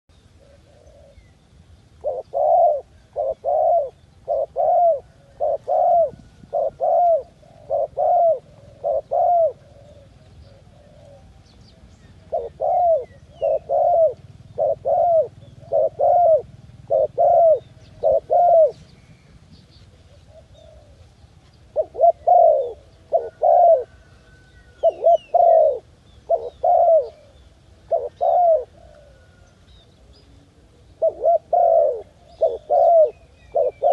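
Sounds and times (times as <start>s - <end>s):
dove cooing: 0.2s - 33.9s
bird chirps: 6.6s - 20.8s, 21.4s - 33.9s.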